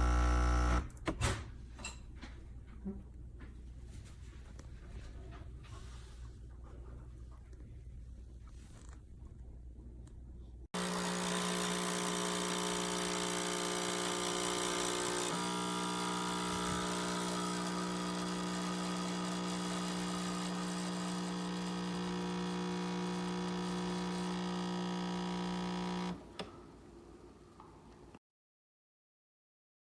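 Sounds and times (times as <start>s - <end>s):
coffee machine humming and hissing: 0.0s - 0.8s, 10.8s - 28.2s.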